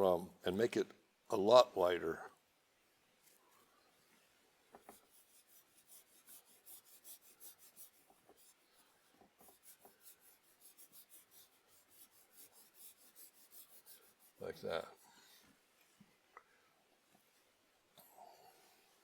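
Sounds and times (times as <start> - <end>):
paintbrush rubbing on canvas: 4.8 - 15.5.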